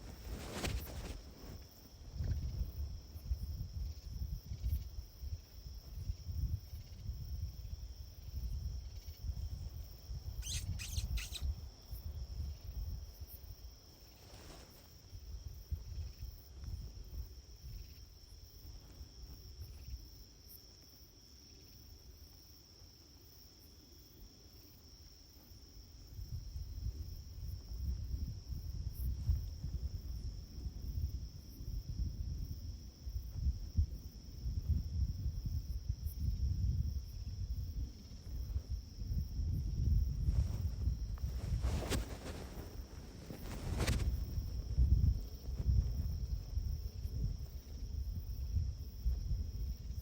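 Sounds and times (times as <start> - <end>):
night insects chorus: 0.0 - 50.0
low rumble on microphone: 26.3 - 50.0.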